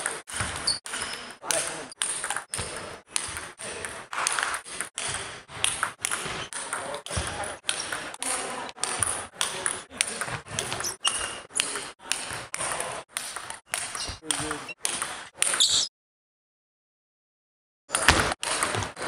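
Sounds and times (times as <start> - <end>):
table tennis ball clicking: 0.5 - 3.5.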